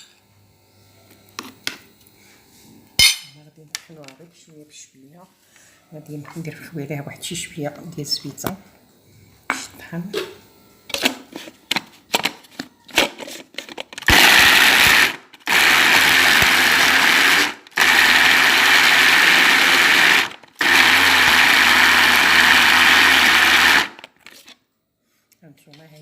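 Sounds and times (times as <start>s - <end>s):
electric food grinder running: 13.6s - 24.3s.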